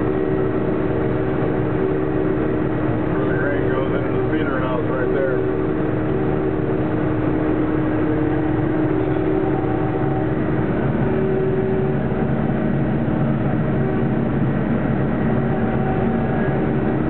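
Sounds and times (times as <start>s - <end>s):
combine harvester droning: 0.0s - 17.0s.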